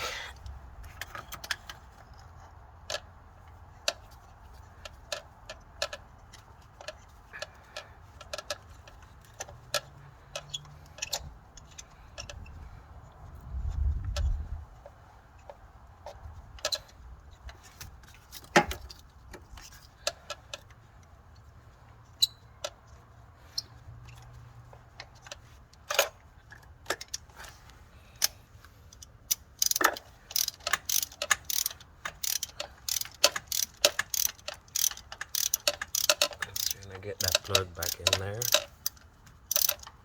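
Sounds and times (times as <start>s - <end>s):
metallic clicks of hand tools: 9.4s - 12.4s, 28.2s - 40.0s
ratchet clicking: 28.9s - 40.0s.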